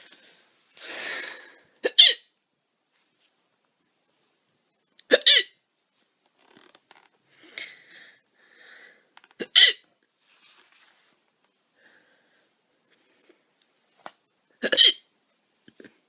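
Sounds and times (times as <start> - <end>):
faint soft sounds: 2.6 - 5.0, 10.0 - 14.6.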